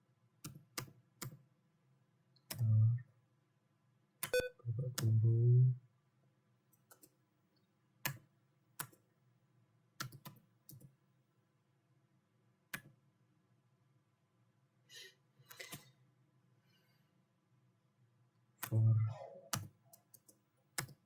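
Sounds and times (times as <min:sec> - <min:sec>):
keyboard typing clicks: 0:02.5 - 0:03.0, 0:04.2 - 0:05.2, 0:18.6 - 0:21.0.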